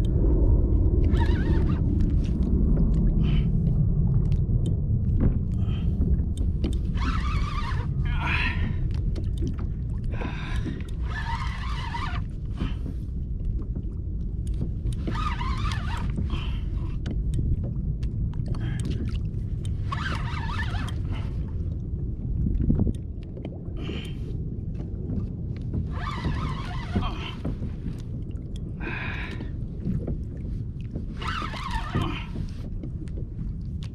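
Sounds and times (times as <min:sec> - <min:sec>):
water splashing against kayak hull: 0:00.0 - 0:33.9
wind rumble on microphone: 0:00.0 - 0:33.9.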